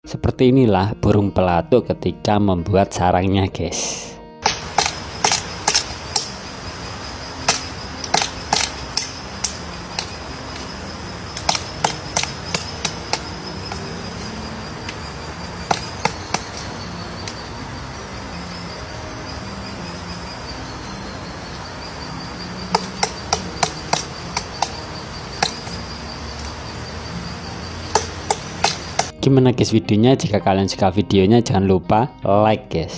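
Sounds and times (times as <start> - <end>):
woodpecker tapping on wood: 4.4 - 29.1
high-pitched whine: 4.4 - 29.7.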